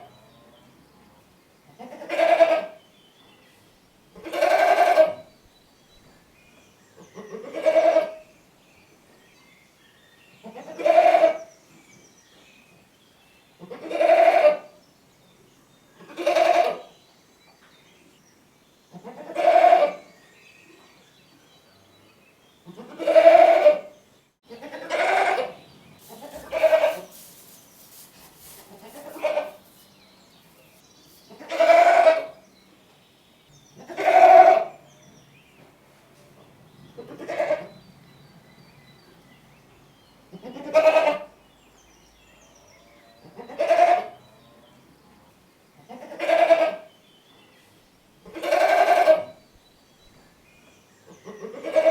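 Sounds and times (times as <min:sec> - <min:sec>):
goat bleating: 0:04.2 - 0:05.2, 0:22.8 - 0:23.9, 0:24.5 - 0:27.1, 0:28.7 - 0:29.6, 0:31.4 - 0:32.3, 0:48.4 - 0:49.3, 0:51.4 - 0:51.9.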